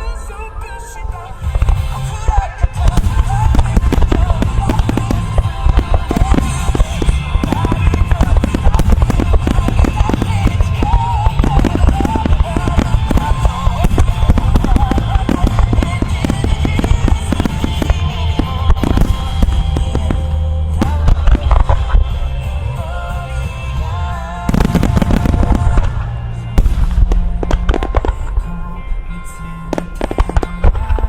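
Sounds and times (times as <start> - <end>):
music playing: 0.0 - 31.0
firework shells bursting: 2.8 - 20.2.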